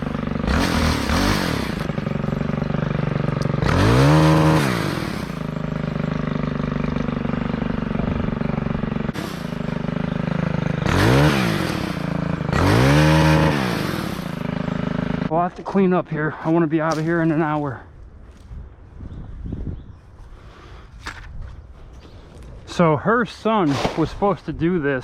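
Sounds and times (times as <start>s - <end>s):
chainsaw idling and revving: 0.0s - 15.3s.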